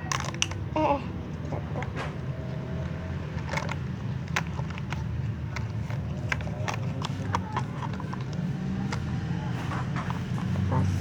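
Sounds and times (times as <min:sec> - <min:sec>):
plastic toy pieces clicking: 0:00.0 - 0:00.8, 0:03.3 - 0:09.3.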